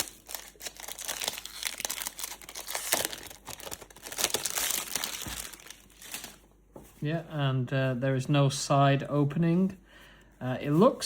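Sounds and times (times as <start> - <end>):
box cover tearing and crinkling: 0.0 - 6.4.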